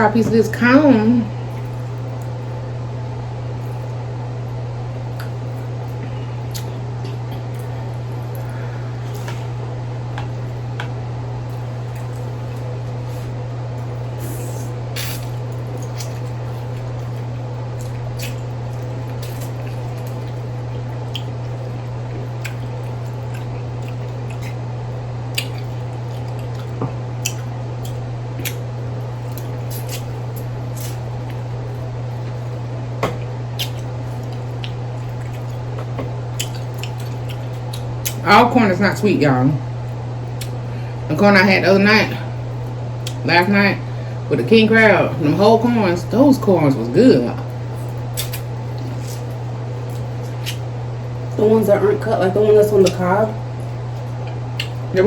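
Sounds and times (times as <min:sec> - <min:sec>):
steady low hum: 0:00.0 - 0:55.0
person chewing corn wetly: 0:01.5 - 0:02.6, 0:04.9 - 0:38.2, 0:39.8 - 0:40.7, 0:47.5 - 0:51.4, 0:52.8 - 0:54.9.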